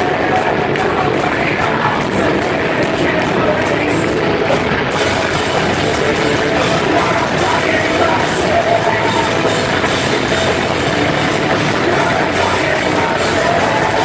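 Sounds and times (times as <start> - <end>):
live heavy rock band playing: 0.0 - 14.0.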